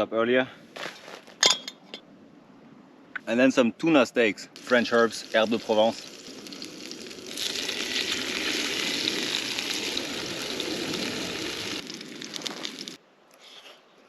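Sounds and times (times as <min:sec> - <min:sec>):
fish sizzling in a hot pan: 0:04.6 - 0:13.0.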